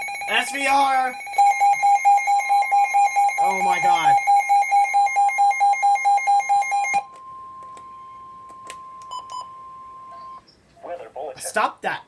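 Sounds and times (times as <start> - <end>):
harsh pulsing beep: 0.0 - 7.0
steady high alert tone: 0.0 - 8.4.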